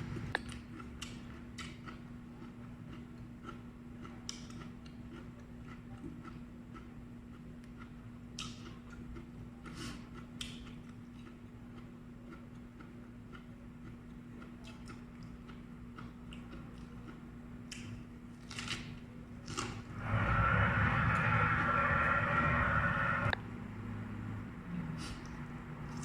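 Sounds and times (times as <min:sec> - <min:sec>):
chewing crunchy vegetables: 0:00.4 - 0:19.8
steady low hum: 0:19.5 - 0:23.4
loud noise hiss: 0:19.8 - 0:23.4.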